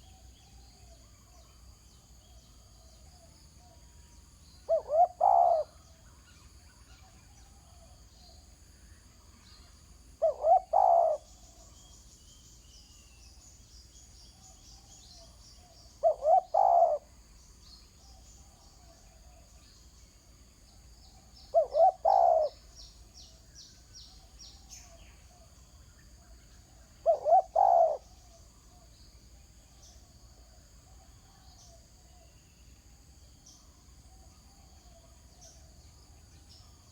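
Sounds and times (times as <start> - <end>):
dove cooing: 4.7 - 5.8, 10.2 - 11.3, 16.0 - 17.1, 21.5 - 22.6, 27.0 - 28.2.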